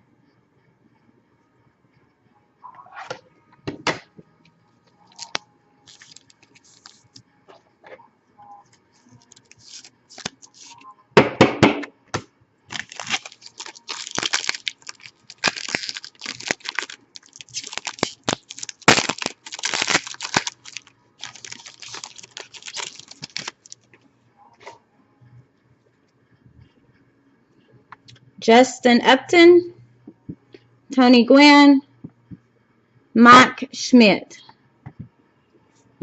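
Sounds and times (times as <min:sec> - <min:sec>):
plastic packaging crinkling and tearing: 0:05.0 - 0:07.1, 0:09.1 - 0:10.8, 0:12.7 - 0:23.9.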